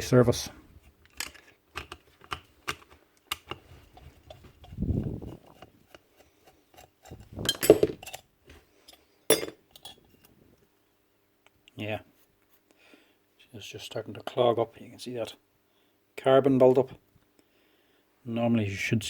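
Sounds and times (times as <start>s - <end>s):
metal parts clinking: 7.5s - 8.2s.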